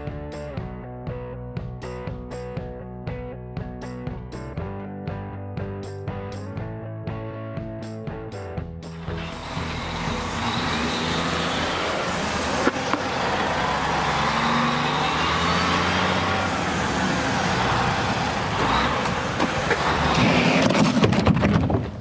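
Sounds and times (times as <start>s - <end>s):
road traffic passing: 8.9s - 21.3s.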